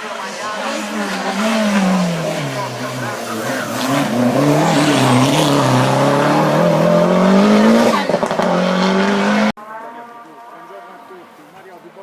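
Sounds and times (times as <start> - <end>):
race car engine at full throttle: 0.0 - 9.6.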